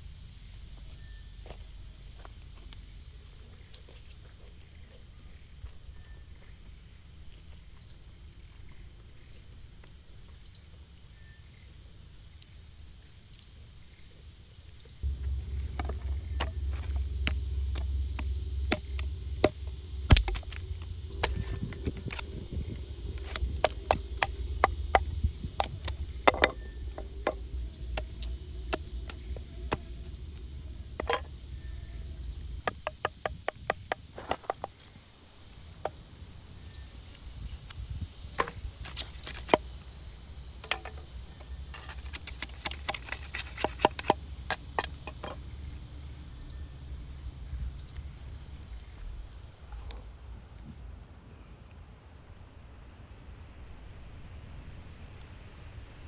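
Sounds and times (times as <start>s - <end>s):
sharp knocks and clicks: 15.0s - 35.0s, 37.7s - 40.0s, 40.6s - 45.5s
low rumble: 15.0s - 51.3s.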